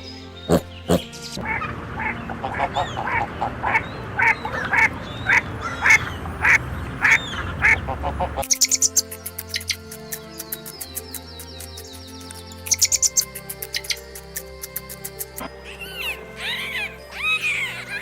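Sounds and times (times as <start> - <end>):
ducks quacking: 0.5 - 11.4, 12.8 - 18.0.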